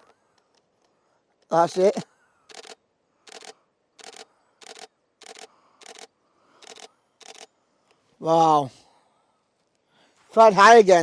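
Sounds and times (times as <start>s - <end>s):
camera shutter clacks: 1.7s - 7.5s.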